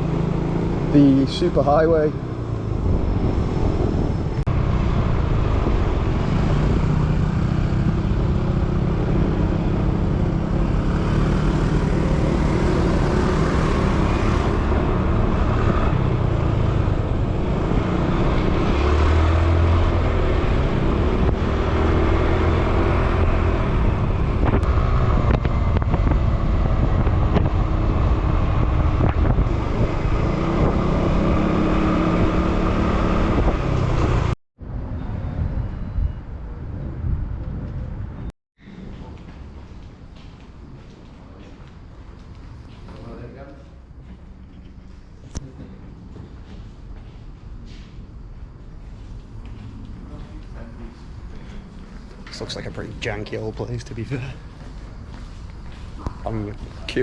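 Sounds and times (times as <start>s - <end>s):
wind and road noise: 0.0s - 57.0s
motorbike engine at speed: 2.2s - 34.4s.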